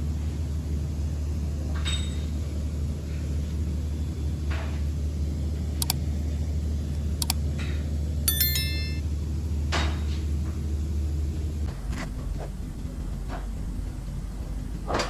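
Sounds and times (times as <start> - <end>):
steady low hum: 0.0 - 15.0
sharp clicks: 5.8 - 6.0, 7.2 - 7.4
metallic ringing clink: 8.3 - 9.0.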